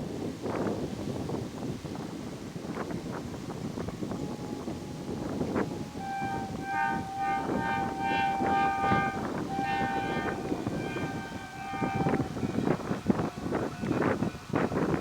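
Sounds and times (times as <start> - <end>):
rumble of passing train: 1.8 - 15.0
train horn blasts: 4.0 - 15.0.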